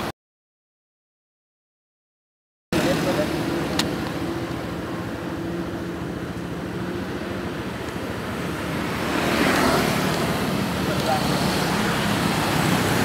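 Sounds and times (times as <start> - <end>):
passing vehicles rushing: 2.8 - 13.0
vehicle engine running: 2.8 - 13.0.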